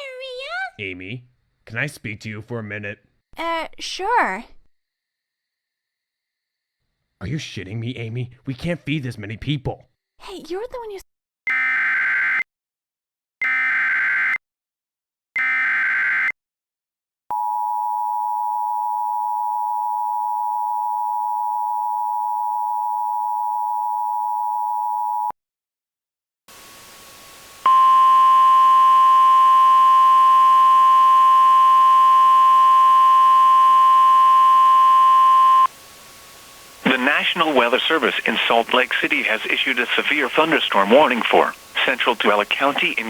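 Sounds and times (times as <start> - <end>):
faint hum: 26.5 - 43.0.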